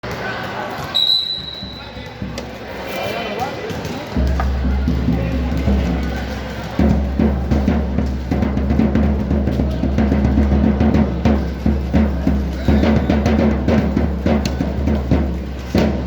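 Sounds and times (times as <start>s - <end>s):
drums beaten fast: 4.2s - 16.0s.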